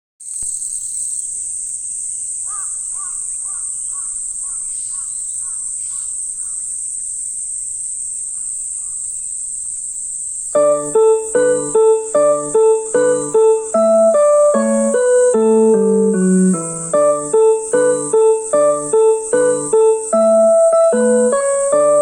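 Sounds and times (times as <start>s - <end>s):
insects droning: 0.3s - 22.0s.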